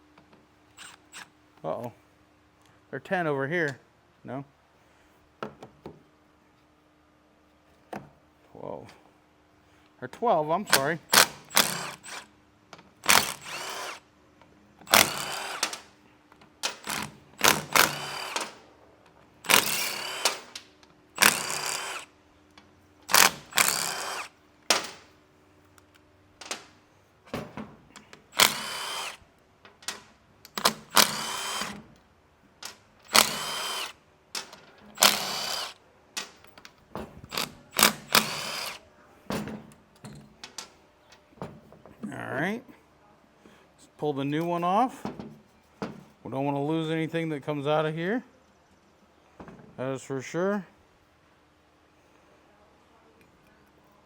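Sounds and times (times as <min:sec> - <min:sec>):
cordless power tool bursts: 0:00.8 - 0:01.3, 0:10.7 - 0:12.3, 0:13.0 - 0:14.0, 0:14.8 - 0:15.9, 0:16.7 - 0:18.6, 0:19.4 - 0:20.6, 0:21.2 - 0:22.1, 0:23.1 - 0:24.4, 0:28.2 - 0:29.2, 0:30.5 - 0:31.9, 0:33.1 - 0:34.0, 0:34.9 - 0:35.8, 0:37.3 - 0:38.8.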